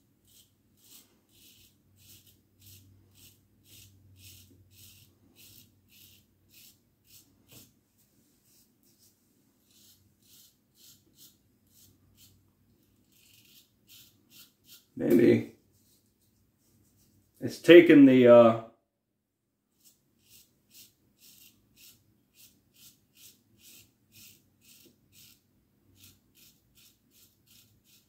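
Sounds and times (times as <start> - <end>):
razor scraping stubble: 0.2 - 7.7, 8.5 - 12.4, 13.0 - 16.0, 19.8 - 25.4, 26.0 - 28.0.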